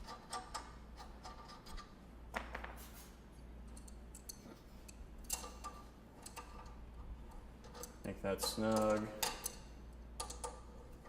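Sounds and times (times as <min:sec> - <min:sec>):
metal clicks and taps of bolt: 0:10.2 - 0:10.6.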